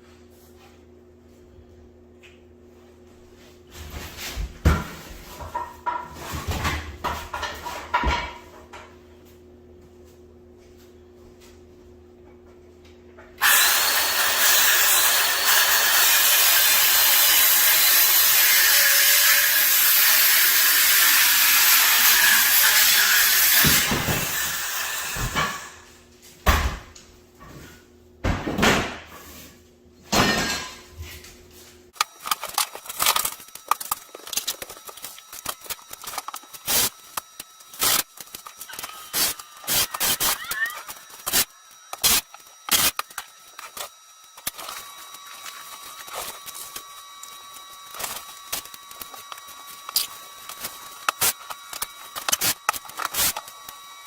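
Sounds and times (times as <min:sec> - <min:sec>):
power tool running: 0:13.4 - 0:25.8, 0:32.0 - 0:54.0.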